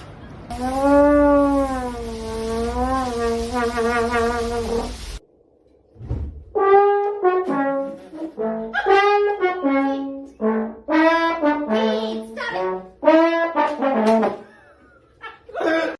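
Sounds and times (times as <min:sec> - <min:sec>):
trombone playing short notes: 0:00.5 - 0:05.0.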